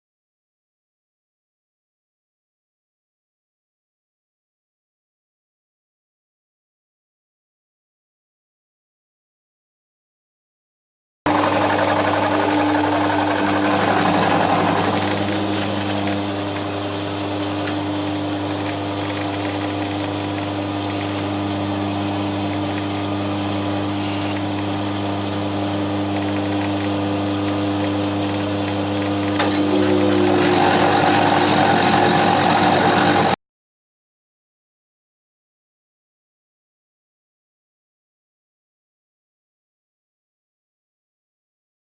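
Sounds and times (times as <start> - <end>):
milling machine hum and whine: 11.3 - 33.4.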